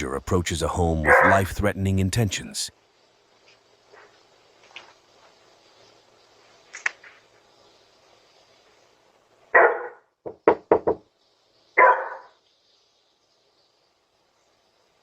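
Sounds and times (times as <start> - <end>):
sharp knocks on door: 10.2 - 11.1.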